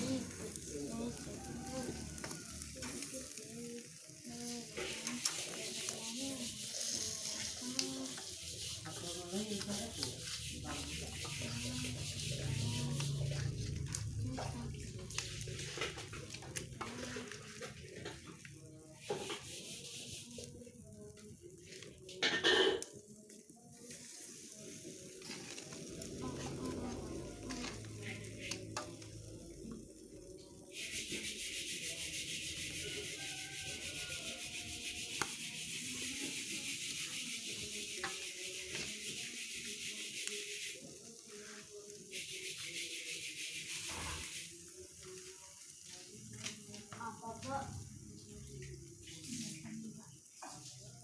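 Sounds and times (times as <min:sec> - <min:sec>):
chicken sizzling on a grill: 0:00.0 - 0:51.0
soft rubbing: 0:04.6 - 0:14.2.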